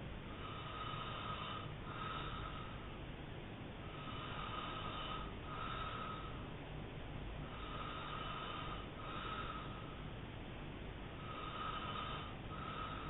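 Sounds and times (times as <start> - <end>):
man snoring: 0.3 - 2.8, 3.9 - 6.3, 7.4 - 9.9, 11.2 - 13.0.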